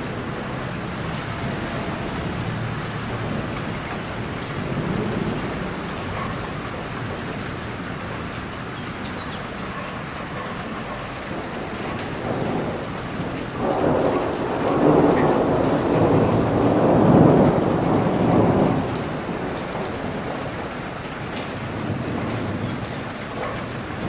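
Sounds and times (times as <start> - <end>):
rain on hard surfaces: 0.0 - 24.0
thunder rumble: 11.3 - 22.9.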